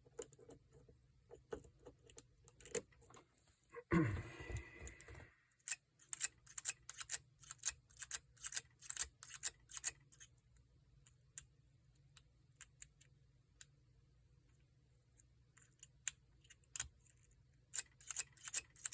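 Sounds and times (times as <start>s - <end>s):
lock pick clicking on pins: 5.6s - 10.3s, 17.7s - 18.9s.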